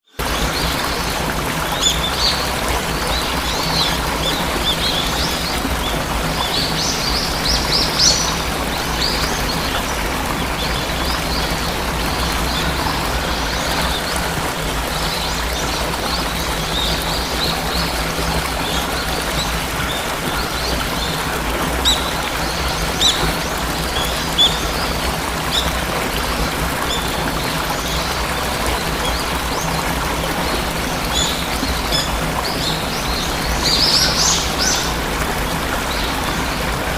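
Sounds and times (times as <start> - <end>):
waterfall rushing: 0.1 - 36.9
small birds chirping: 3.4 - 14.2, 30.4 - 36.6.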